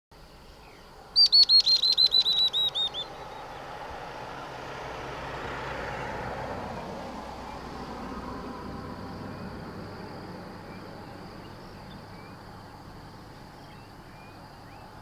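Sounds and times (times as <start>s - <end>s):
faint insect drone: 0.1s - 15.0s
bird calling high notes: 1.2s - 3.4s.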